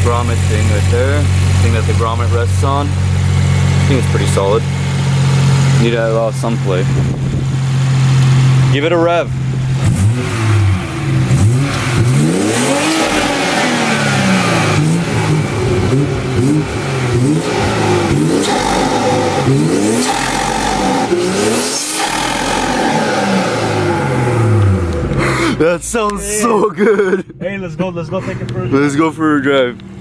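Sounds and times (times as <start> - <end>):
car engine revving: 0.0 - 30.0.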